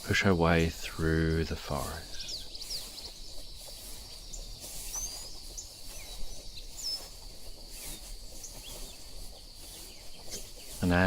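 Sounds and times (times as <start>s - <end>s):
high insect drone: 0.0s - 11.0s
short bird chirps: 2.0s - 9.0s.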